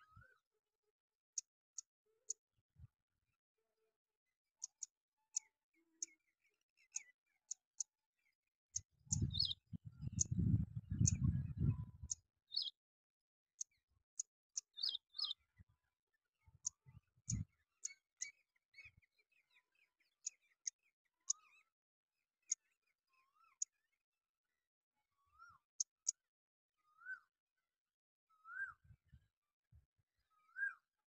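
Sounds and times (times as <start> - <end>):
bird clicks and chirps: 4.6 - 6.2, 6.8 - 7.9, 8.8 - 9.6, 11.0 - 11.3, 13.6 - 15.4, 16.6 - 18.3.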